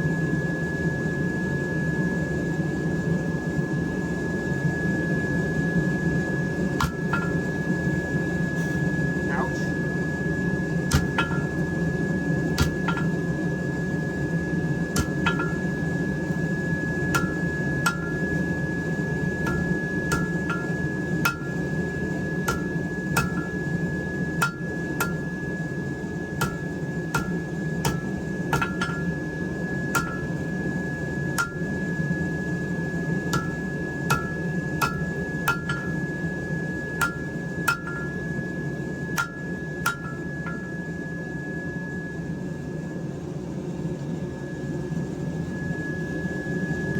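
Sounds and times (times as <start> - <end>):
hammer striking steel on anvil: 6.8 - 8.0, 10.9 - 14.3, 14.9 - 32.4, 33.2 - 41.0.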